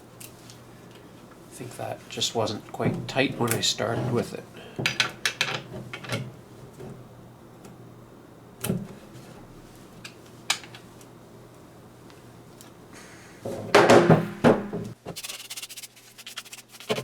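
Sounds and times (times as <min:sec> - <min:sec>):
knock: 0:13.7 - 0:14.9.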